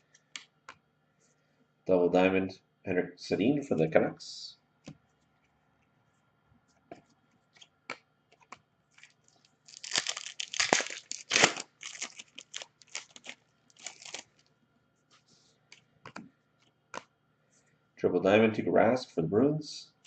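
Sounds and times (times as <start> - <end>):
soft handling sounds: 4.8 - 17.8
foil wrapper tearing and crumpling: 8.9 - 14.5.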